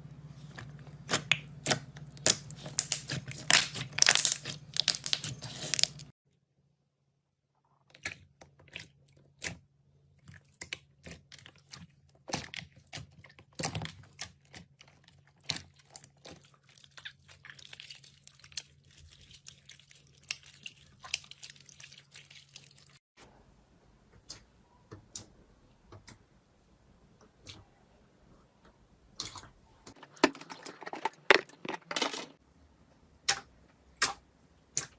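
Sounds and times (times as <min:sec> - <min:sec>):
slime crackling and popping: 0:01.1 - 0:06.0.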